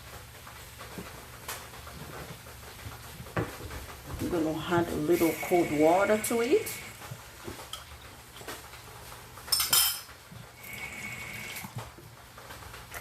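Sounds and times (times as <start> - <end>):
kitchen utensils and bowl handled: 9.4 - 10.2.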